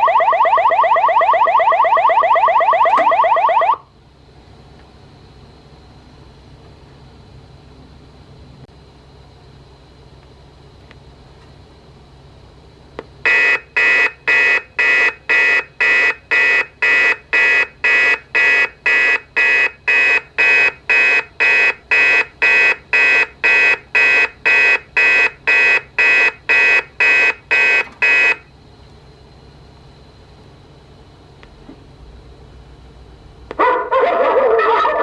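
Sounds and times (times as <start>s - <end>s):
pulsed fire alarm tone: 0.0s - 3.9s, 13.2s - 28.5s.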